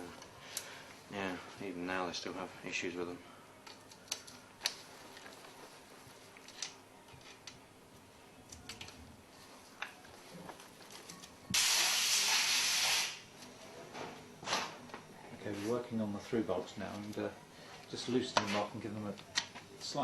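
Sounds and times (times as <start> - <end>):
pressurised jet hissing: 11.5 - 13.2.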